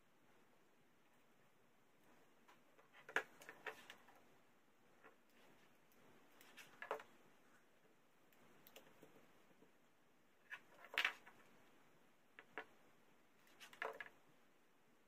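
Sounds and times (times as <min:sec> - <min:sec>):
faint clicks and taps: 0:07.8 - 0:09.8.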